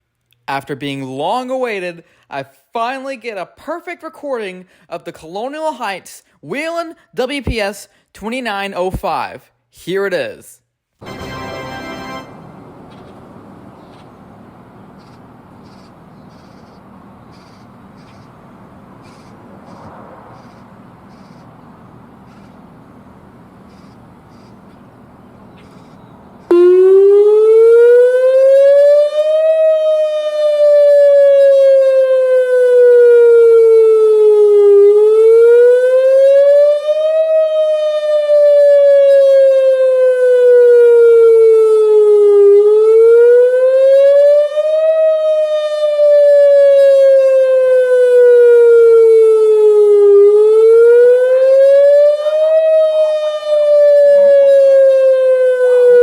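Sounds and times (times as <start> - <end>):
warning siren wail: 11.0 - 14.9, 26.5 - 56.0.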